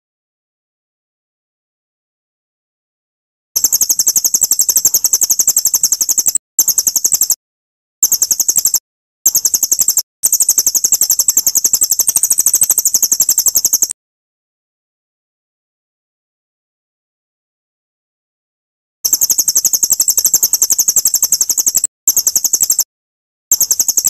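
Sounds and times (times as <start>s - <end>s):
fast high-pitched bird trill: 3.6s - 7.4s, 8.0s - 14.0s, 19.1s - 22.9s, 23.5s - 24.0s.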